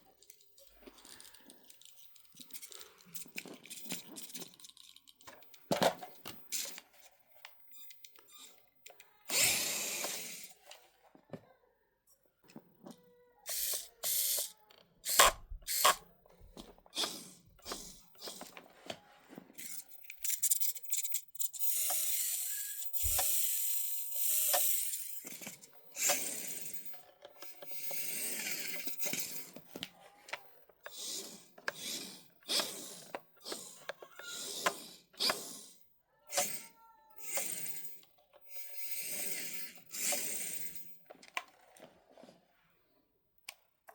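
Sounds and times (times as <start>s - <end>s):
tiny motor and gears whirring: 9.2s - 10.6s, 13.5s - 16.0s, 19.6s - 29.6s, 30.9s - 41.0s.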